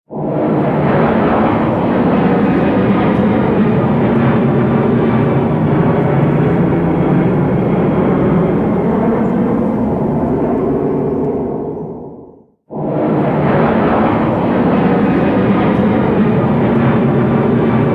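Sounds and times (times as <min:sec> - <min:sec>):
jet engines rumbling: 0:00.2 - 0:17.9.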